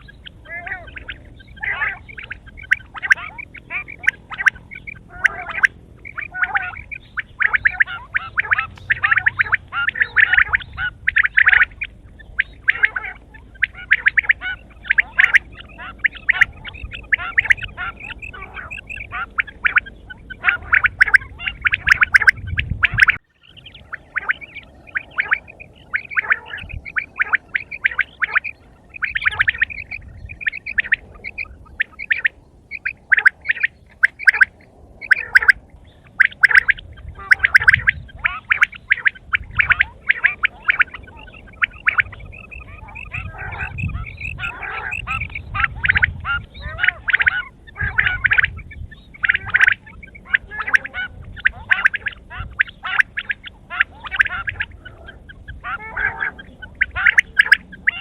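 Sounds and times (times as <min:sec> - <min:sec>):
quail chirping: 0:00.0 - 0:58.0.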